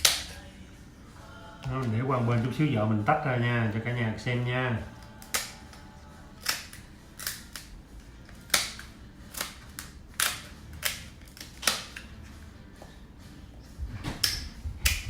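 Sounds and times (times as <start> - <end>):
crab shell cracking and snapping: 0.0 - 0.4, 5.0 - 12.1.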